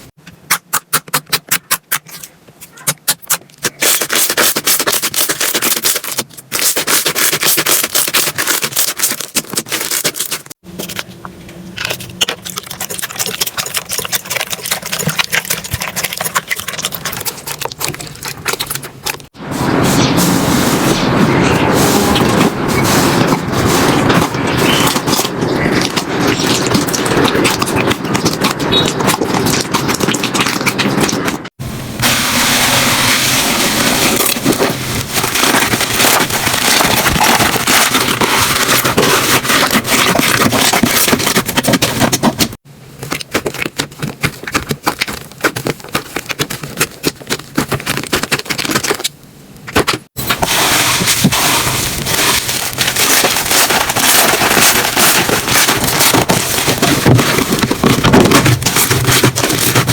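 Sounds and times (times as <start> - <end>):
slime crackling and popping: 22.8 - 49.2, 49.8 - 59.9.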